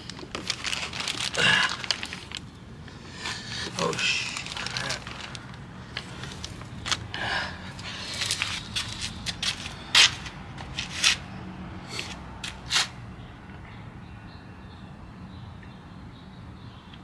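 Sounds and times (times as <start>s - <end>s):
sharp rustling or scraping: 0.0s - 2.4s, 3.0s - 7.1s, 7.8s - 11.3s, 11.9s - 13.0s.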